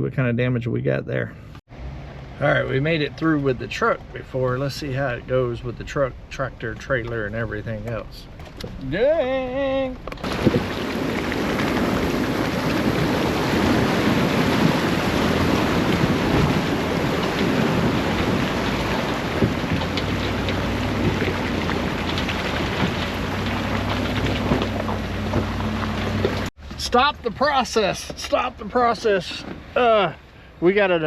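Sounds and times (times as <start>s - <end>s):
truck engine hum: 1.3s - 31.0s
tyres on wet road: 1.4s - 31.0s.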